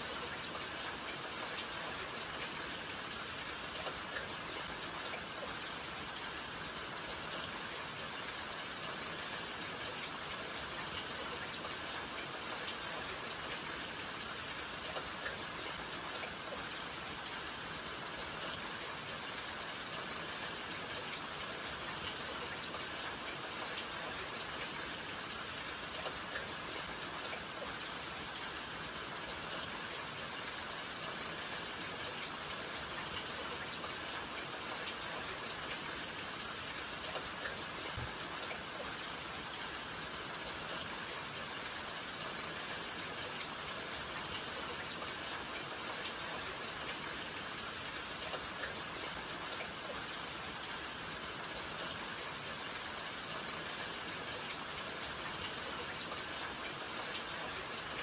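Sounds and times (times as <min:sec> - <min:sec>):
steady rain falling: 0:00.0 - 0:58.0.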